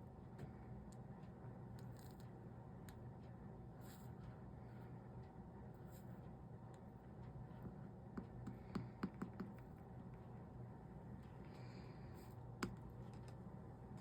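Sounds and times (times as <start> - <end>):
faint low hum: 0.0 - 14.0
soldering clicks and taps: 12.5 - 13.4.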